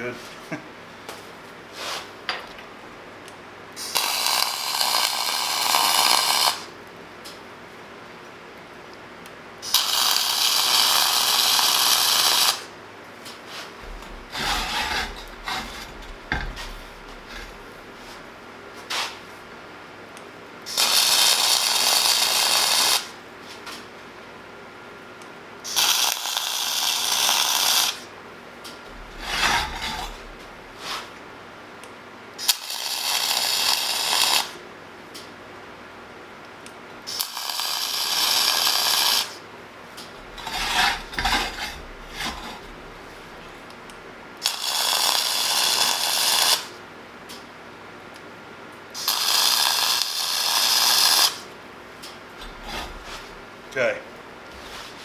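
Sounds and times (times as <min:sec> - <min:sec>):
welding arc crackling: 0:03.8 - 0:06.7, 0:09.6 - 0:12.7, 0:13.8 - 0:18.0, 0:20.7 - 0:23.2, 0:25.7 - 0:28.1, 0:28.9 - 0:30.8, 0:32.4 - 0:34.6, 0:37.1 - 0:39.4, 0:40.0 - 0:43.8, 0:44.4 - 0:46.7, 0:49.0 - 0:51.5.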